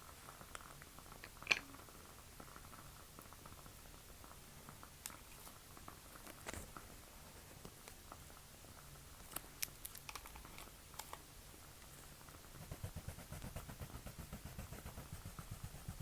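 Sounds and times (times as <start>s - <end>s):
small clicks and ticks: 0.0s - 12.4s.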